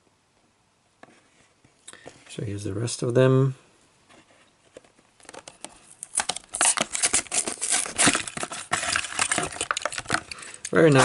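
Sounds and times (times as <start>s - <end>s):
plastic packaging crackling: 4.8s - 11.0s.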